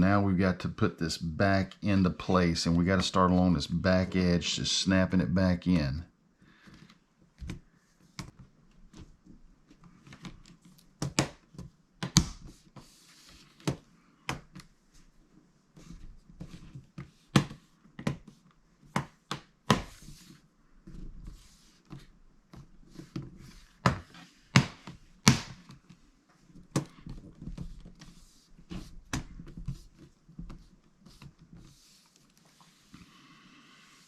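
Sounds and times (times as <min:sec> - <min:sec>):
soft handling rustle: 0:25.6 - 0:34.0.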